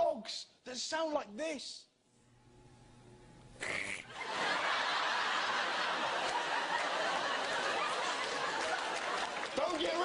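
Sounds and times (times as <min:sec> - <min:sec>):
studio audience laughing: 0:04.1 - 0:10.0.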